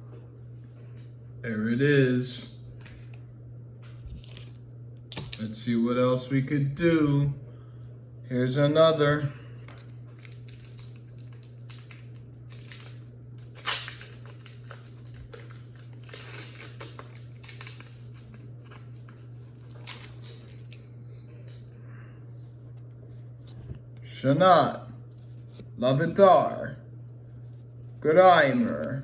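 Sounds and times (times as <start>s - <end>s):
low hum: 0.0s - 29.0s
foil wrapper tearing and crinkling: 4.1s - 5.5s, 9.6s - 20.8s.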